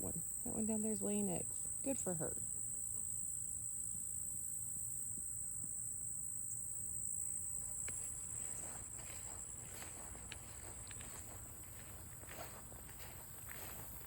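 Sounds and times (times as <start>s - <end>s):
faint ticks: 7.8s - 13.7s.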